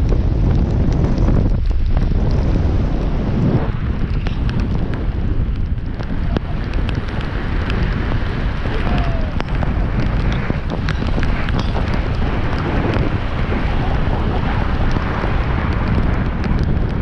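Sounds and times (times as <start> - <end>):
wind buffeting microphone: 0.0 - 17.0
sharp ticks: 4.0 - 17.0.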